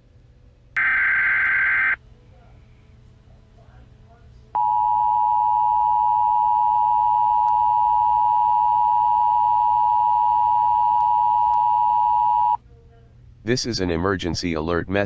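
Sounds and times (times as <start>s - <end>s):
emergency alert dual tone: 0.8s - 2.0s, 4.6s - 12.6s.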